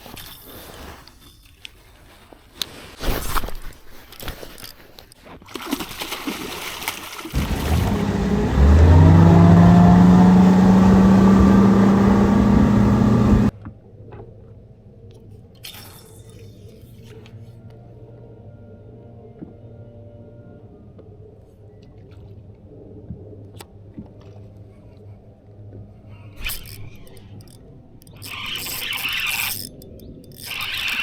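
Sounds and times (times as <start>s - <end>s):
water sounds: 5.6s - 12.4s
boat motor running: 7.3s - 13.5s.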